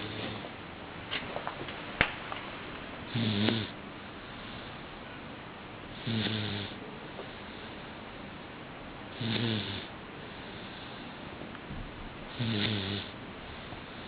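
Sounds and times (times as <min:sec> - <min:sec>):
baby snoring lightly: 0:03.1 - 0:03.8, 0:06.0 - 0:06.8, 0:12.4 - 0:13.1.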